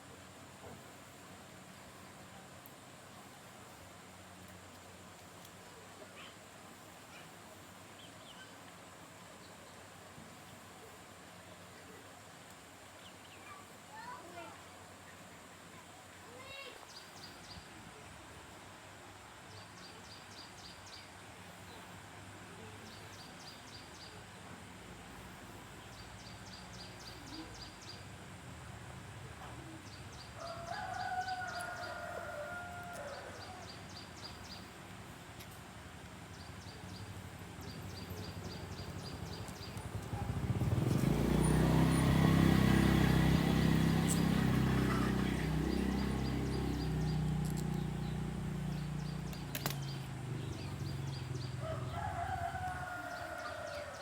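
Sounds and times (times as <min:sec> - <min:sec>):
animal call: 0:43.5 - 0:47.2.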